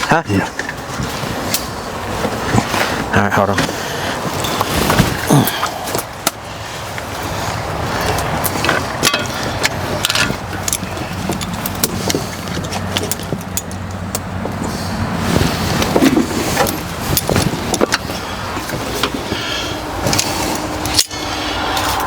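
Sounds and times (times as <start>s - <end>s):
engine-like hum: 0.0s - 22.0s
metallic clicks and knocks: 8.0s - 14.6s.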